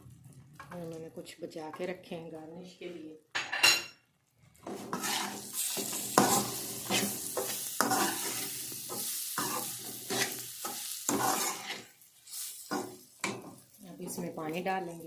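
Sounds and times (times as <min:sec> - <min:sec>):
food sizzling in oil: 0:04.4 - 0:15.0
spoon scraping in a pan: 0:04.6 - 0:14.4.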